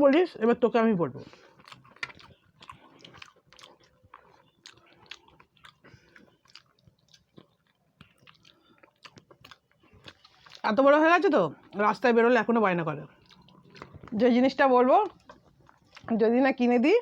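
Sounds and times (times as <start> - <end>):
chewing with wet mouth clicks: 1.3 - 10.7, 13.1 - 14.3, 15.0 - 16.1.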